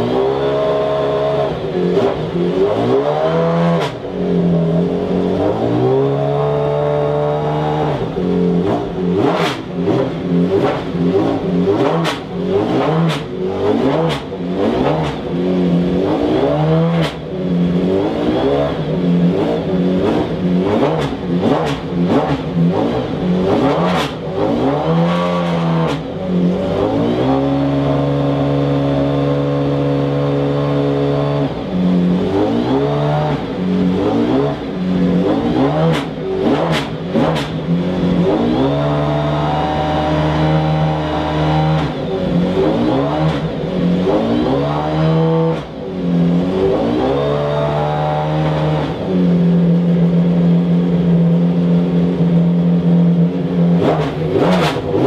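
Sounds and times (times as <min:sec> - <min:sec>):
racing engine revving: 0:00.0 - 0:55.0.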